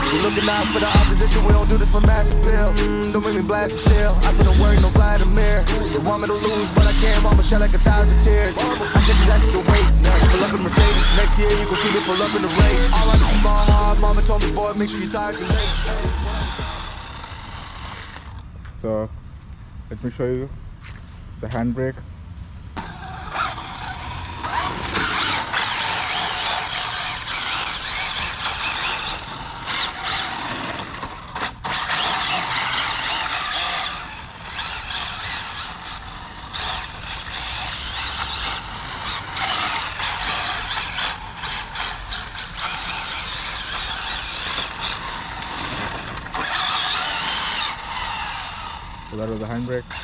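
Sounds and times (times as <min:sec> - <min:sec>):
tyres squealing: 0:00.0 - 0:18.4
rc car motor whining: 0:00.0 - 0:18.5, 0:22.8 - 0:50.0.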